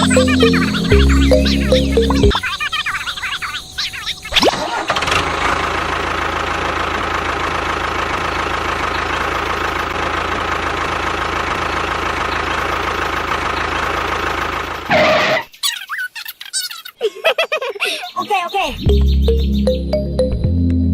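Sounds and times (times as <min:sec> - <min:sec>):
engine idling with knocking beat: 0:00.0 - 0:02.4, 0:05.0 - 0:14.9.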